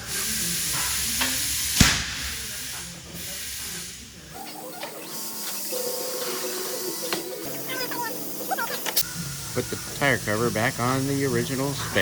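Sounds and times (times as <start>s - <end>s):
workshop clatter: 0.0s - 7.4s
compressed air hissing: 0.0s - 7.6s, 8.2s - 12.0s
sharp metallic clank: 1.2s - 2.9s.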